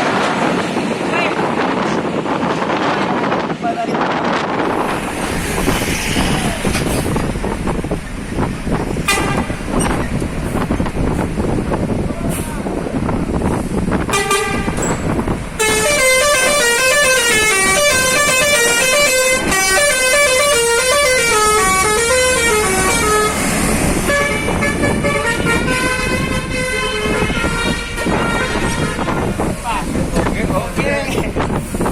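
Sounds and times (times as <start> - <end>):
bus horn playing a tune: 9.0 - 9.9, 14.0 - 29.3.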